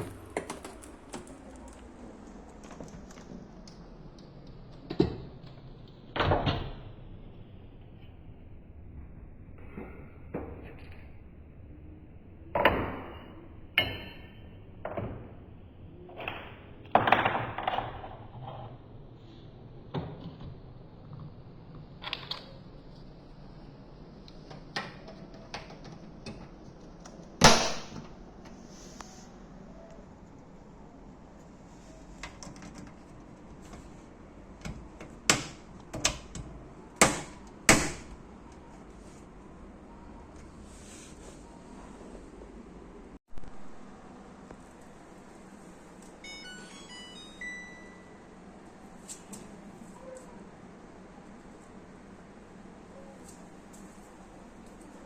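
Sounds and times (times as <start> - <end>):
clattering: 0.0 - 3.2
handling knocks and clunks: 0.0 - 3.3.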